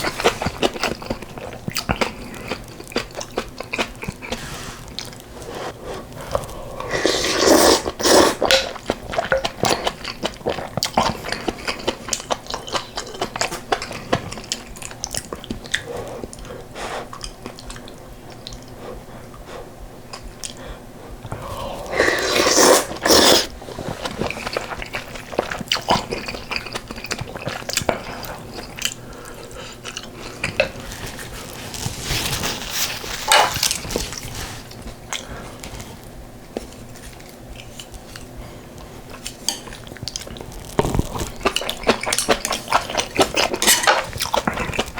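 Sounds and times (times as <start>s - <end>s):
wet chewing with clicks: 0.0s - 6.6s, 7.8s - 21.9s, 22.5s - 44.9s
slurping soup: 3.7s - 14.6s, 21.3s - 35.3s.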